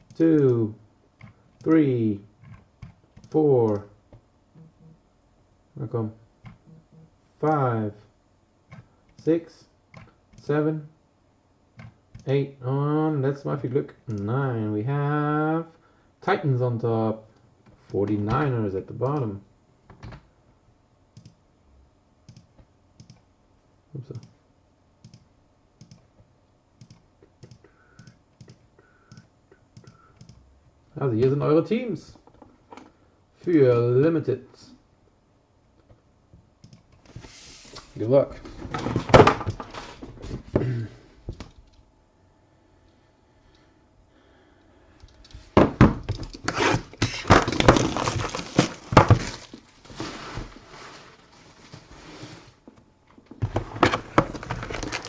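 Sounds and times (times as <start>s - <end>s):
computer keys clicking: 21.2s - 21.4s, 22.3s - 23.2s, 25.0s - 26.0s, 26.8s - 30.4s
wrapper crinkling and tearing: 47.2s - 50.1s, 54.6s - 55.0s.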